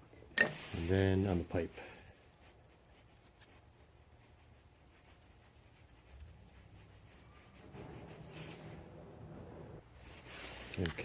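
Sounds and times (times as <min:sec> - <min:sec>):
brush scratching on pipe: 0:00.6 - 0:09.0
low hum: 0:07.3 - 0:09.9.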